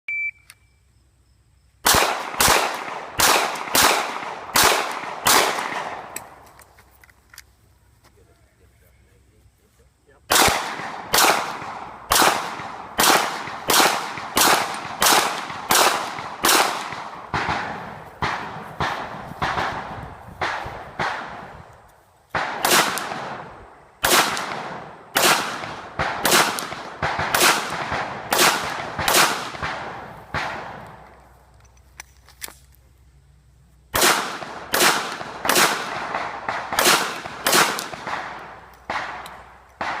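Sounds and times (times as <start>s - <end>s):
pistol shots with echo: 1.8s - 6.4s, 10.3s - 21.6s, 22.3s - 31.0s, 33.9s - 40.0s.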